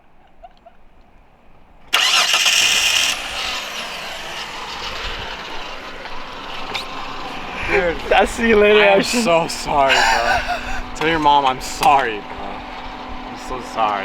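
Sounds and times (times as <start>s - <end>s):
car engine cranking and starting: 1.9s - 14.0s.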